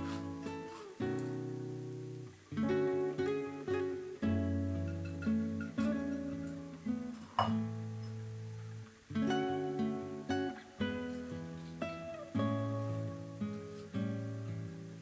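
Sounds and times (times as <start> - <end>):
plucked acoustic guitar: 0.0 - 15.0.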